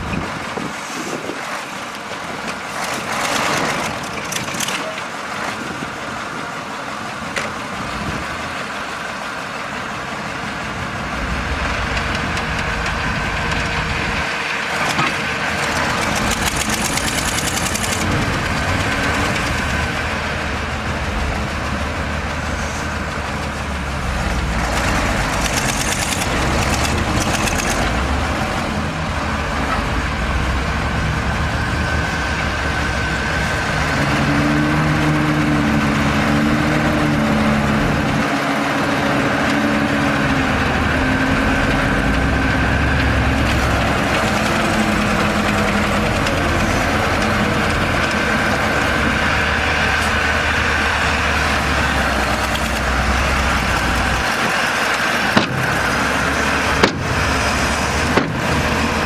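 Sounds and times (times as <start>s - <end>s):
diesel machinery engine rumble: 0.0s - 59.0s
squealing or rattling: 11.0s - 20.2s, 22.3s - 28.8s.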